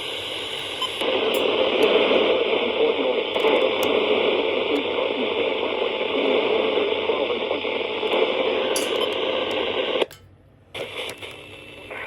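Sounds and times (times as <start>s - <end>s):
loud static hiss: 0.0s - 12.0s
automated voice under static: 0.6s - 10.0s.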